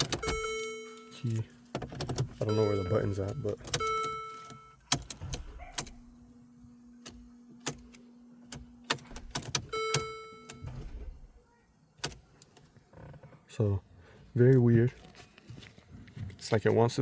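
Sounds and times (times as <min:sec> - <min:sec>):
low electrical hum: 0:00.0 - 0:17.0
dashboard chime: 0:00.2 - 0:01.3, 0:02.4 - 0:04.8, 0:09.7 - 0:10.7.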